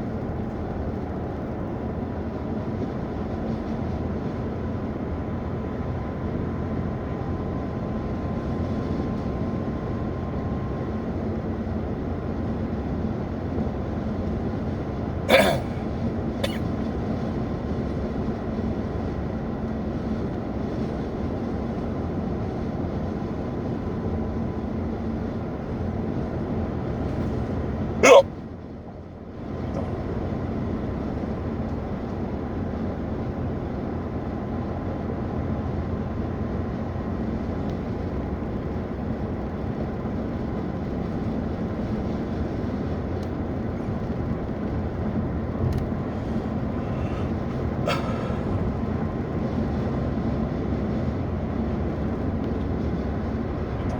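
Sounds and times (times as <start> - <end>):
car humming on the road: 0.0 - 53.9
man hiccuping loudly: 15.3 - 16.6, 28.0 - 28.2, 46.9 - 48.7.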